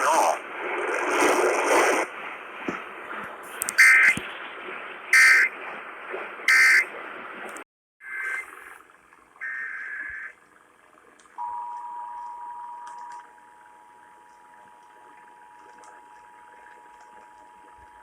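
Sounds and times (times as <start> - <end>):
radio static: 3.5 - 4.2.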